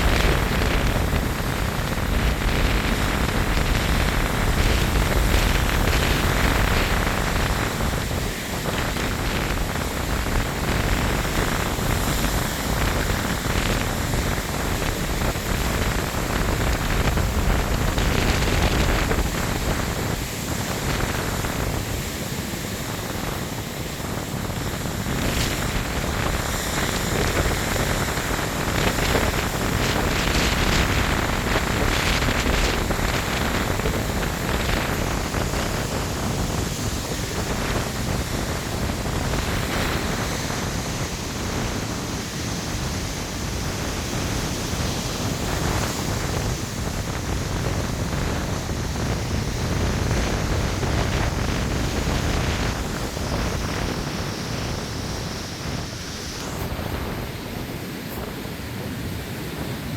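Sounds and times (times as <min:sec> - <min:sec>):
ocean surf breaking: 0:00.0 - 0:59.9
storm wind gusting: 0:00.0 - 0:59.9.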